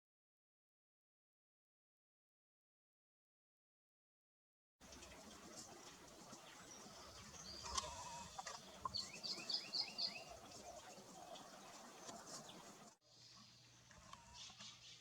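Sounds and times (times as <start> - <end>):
outdoor hiss: 4.8 - 13.8
bird chips and chirps: 4.9 - 12.8.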